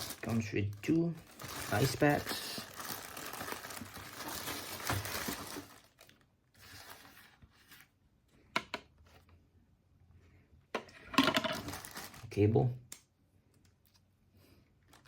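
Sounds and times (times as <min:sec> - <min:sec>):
plastic packaging crinkling: 0:00.0 - 0:07.3, 0:11.4 - 0:12.4.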